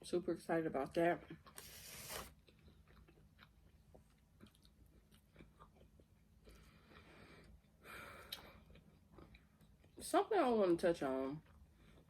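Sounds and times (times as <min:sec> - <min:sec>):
chewing with mouth clicks: 0:02.4 - 0:06.7.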